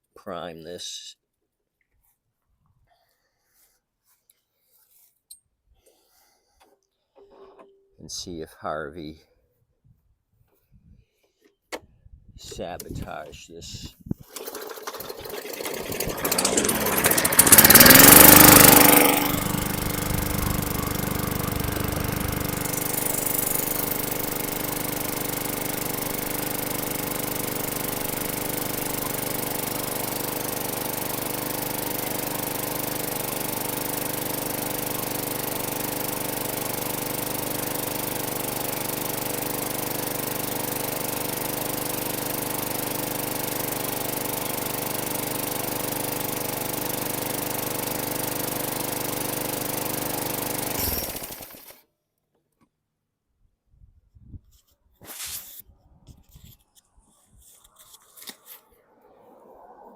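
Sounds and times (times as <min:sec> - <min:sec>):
push mower engine starting and running: 0:14.2 - 0:51.8.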